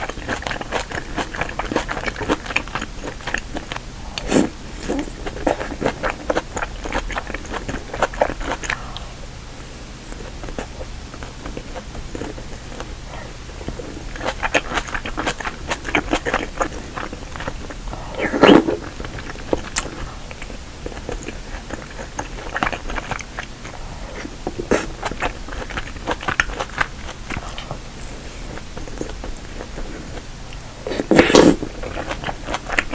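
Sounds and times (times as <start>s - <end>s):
person chewing food: 0.0s - 32.9s.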